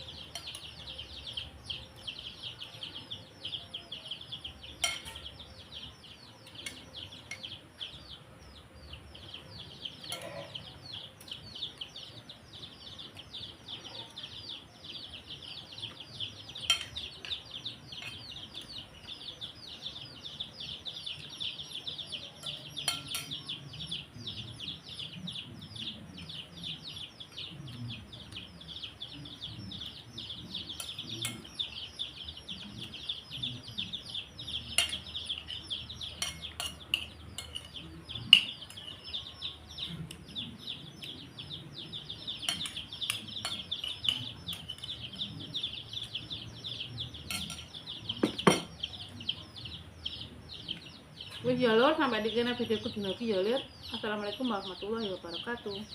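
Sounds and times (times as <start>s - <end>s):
small birds chirping: 0.0s - 55.9s
cutlery clinking on dishes: 0.3s - 0.8s, 4.8s - 5.4s, 10.0s - 10.7s, 16.6s - 17.4s, 18.0s - 18.7s, 22.3s - 23.6s, 34.7s - 39.2s, 42.4s - 45.2s, 47.2s - 48.9s.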